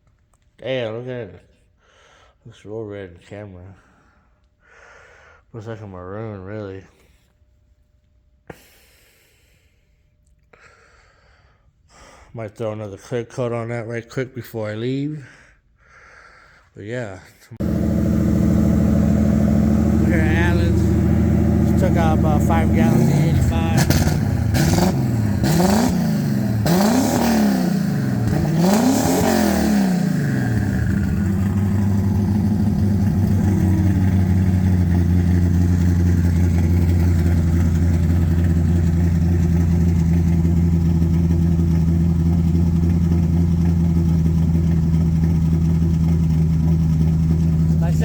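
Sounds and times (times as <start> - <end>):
car engine revving and idling: 17.6 - 48.0.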